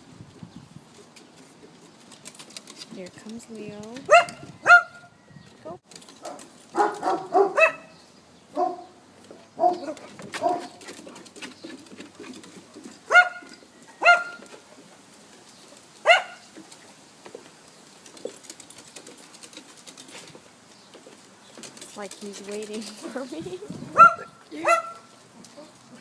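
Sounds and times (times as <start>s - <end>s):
dog barking: 4.1s - 5.1s, 6.2s - 7.9s, 8.5s - 8.9s, 9.6s - 10.8s, 13.1s - 14.4s, 16.0s - 16.5s, 23.9s - 25.1s.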